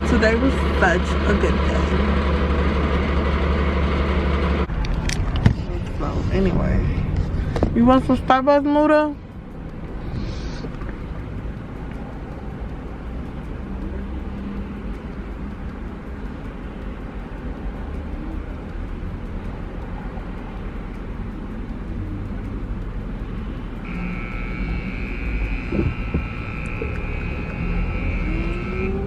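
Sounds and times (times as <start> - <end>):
car cabin rumble: 0.0 - 9.1, 23.8 - 29.0
high-pitched electronic tone: 23.8 - 29.0
short knocks: 25.7 - 26.4.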